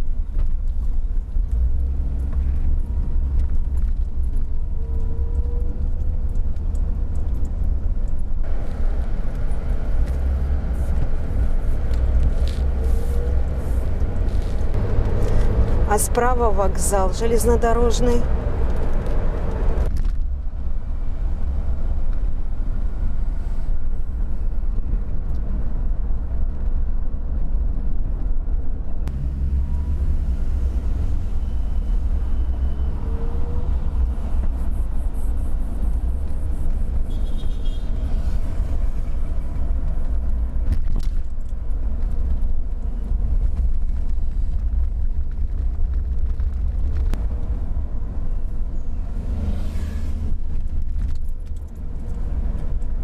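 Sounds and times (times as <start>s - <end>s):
car engine rumble: 0.0s - 53.0s
tyre road noise: 0.0s - 53.0s.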